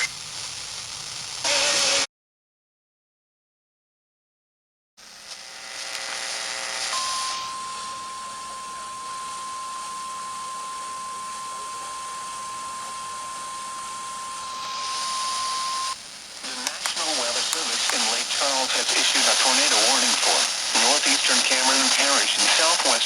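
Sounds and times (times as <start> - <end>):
radio static hiss: 0.0 - 2.1, 5.0 - 23.0
steady alarm tone: 7.0 - 16.0.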